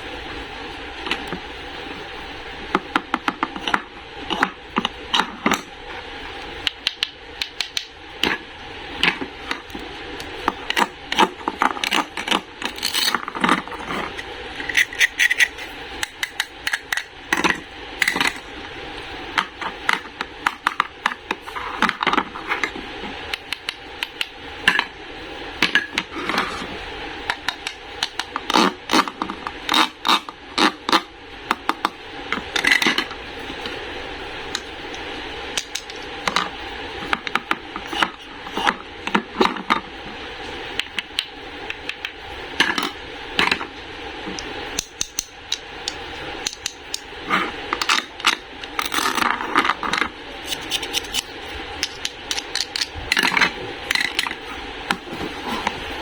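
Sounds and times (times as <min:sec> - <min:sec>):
steady background hiss: 0:00.0 - 0:56.0
hard objects tapping and clicking: 0:06.6 - 0:08.4, 0:09.0 - 0:18.4, 0:35.6 - 0:39.9, 0:44.3 - 0:55.8.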